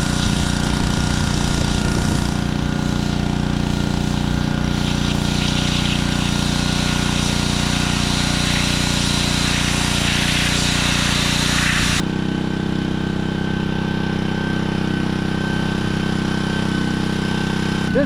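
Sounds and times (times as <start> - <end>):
high-pressure water spray hiss: 0.0 - 12.0
pressure washer engine running: 0.0 - 18.0.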